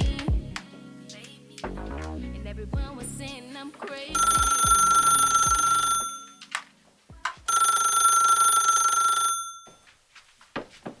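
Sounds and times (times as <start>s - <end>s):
phone ringing: 4.2s - 9.8s.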